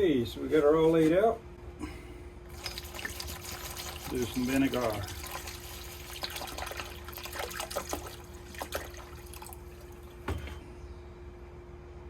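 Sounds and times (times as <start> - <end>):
liquid trickling and splashing: 2.5 - 10.6
knock: 10.2 - 10.6.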